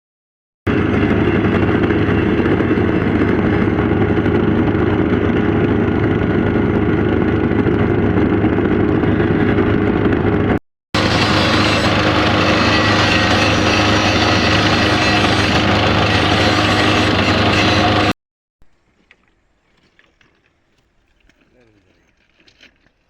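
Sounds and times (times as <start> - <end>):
engine running steadily: 0.7 - 18.1.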